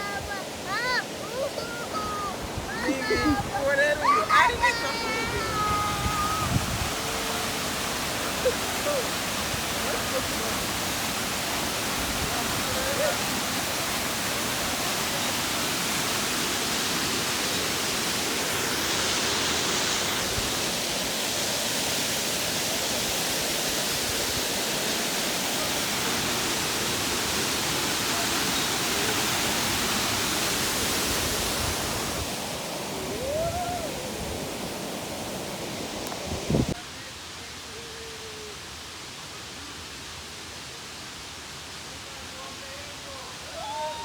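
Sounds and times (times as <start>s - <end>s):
waterfall rushing: 0.0s - 44.0s.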